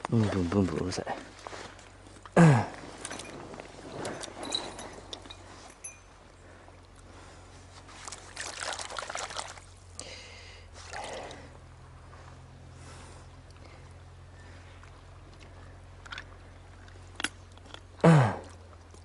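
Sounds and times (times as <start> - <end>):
stream water splashing and trickling: 0.0 - 12.3, 13.2 - 19.0
low hum: 1.2 - 19.0.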